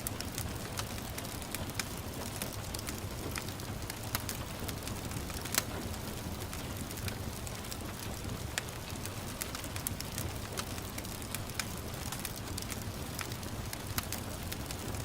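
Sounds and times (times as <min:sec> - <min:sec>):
gentle rain hiss: 0:00.0 - 0:15.0
wood fire crackling and popping: 0:00.0 - 0:15.0.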